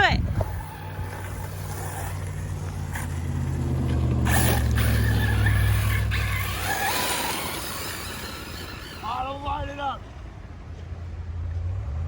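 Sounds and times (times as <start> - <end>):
electric motor whining: 0.0 - 9.4.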